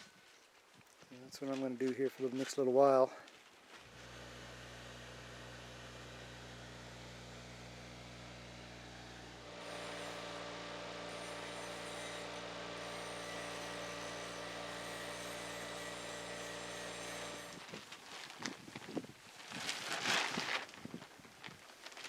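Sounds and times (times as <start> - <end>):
welder humming: 3.9 - 17.9
welding arc hissing: 9.1 - 17.6.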